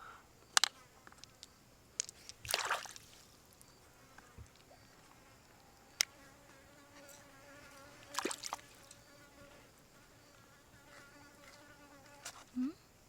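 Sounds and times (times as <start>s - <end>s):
fly buzzing: 3.9s - 12.8s.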